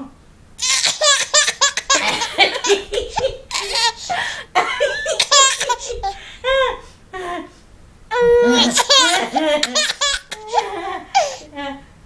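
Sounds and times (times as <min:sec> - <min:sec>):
baby laughing: 0:00.6 - 0:06.8, 0:08.1 - 0:11.4.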